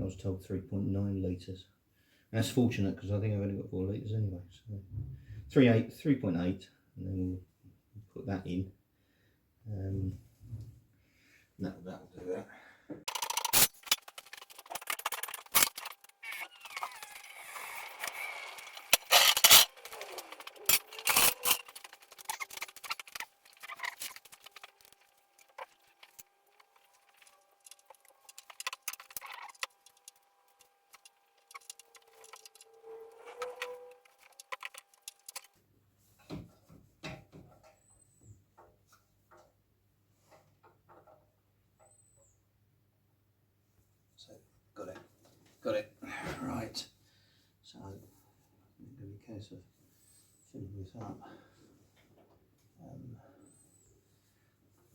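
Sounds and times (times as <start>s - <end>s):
tools and containers being handled: 13.1s - 35.5s.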